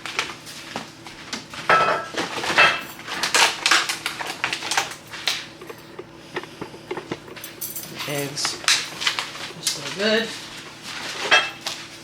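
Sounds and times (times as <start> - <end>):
food containers and jars clattering: 2.5 - 10.4.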